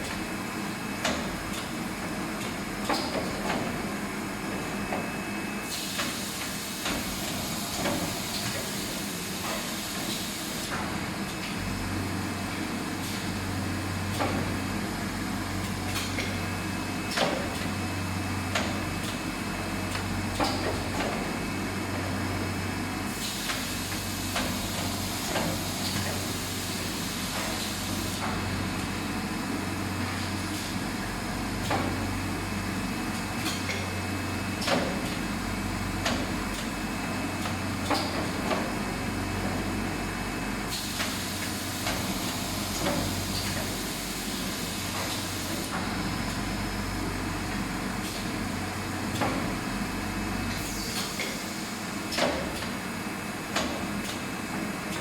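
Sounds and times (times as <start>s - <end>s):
hiss: 50.5s - 52.3s.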